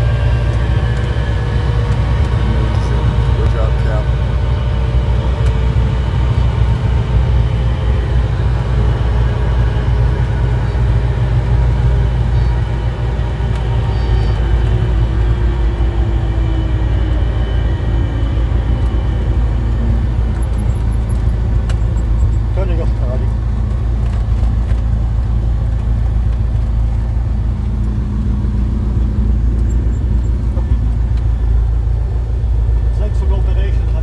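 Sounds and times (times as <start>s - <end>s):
motor vehicle rumbling: 0.0s - 34.0s.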